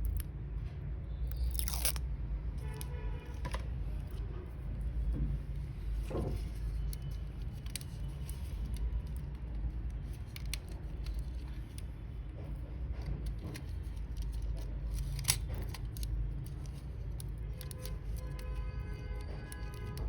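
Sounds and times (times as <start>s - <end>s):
clicks and taps of plastic parts: 5.1s - 20.0s.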